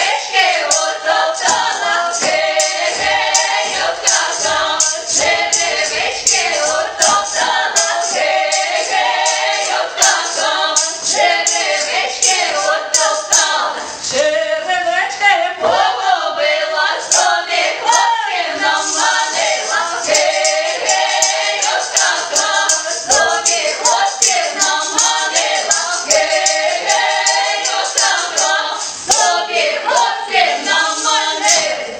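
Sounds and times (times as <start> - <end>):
group singing a cappella: 0.0 - 31.9.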